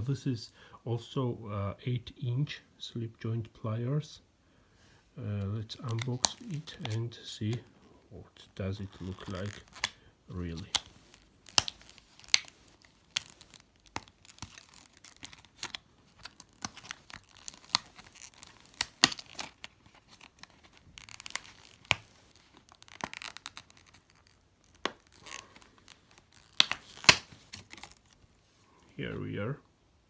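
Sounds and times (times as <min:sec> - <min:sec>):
packaging being torn open: 0:05.7 - 0:07.7, 0:08.8 - 0:28.2
rustling and tearing: 0:05.7 - 0:28.6.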